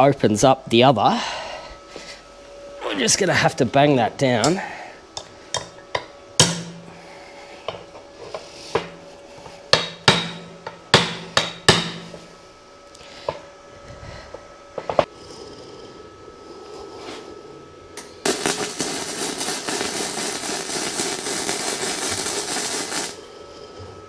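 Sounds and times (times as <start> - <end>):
hammer striking ringing steel: 5.2 - 7.0, 9.7 - 12.4.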